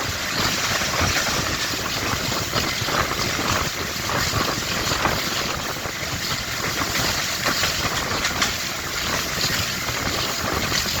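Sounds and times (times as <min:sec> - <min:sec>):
diesel locomotive engine running: 0:00.0 - 0:11.0
wind on microphone: 0:00.0 - 0:11.0.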